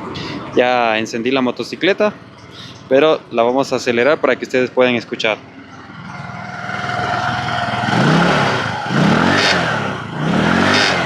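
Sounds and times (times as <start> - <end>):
scooter engine revving: 5.4 - 11.0.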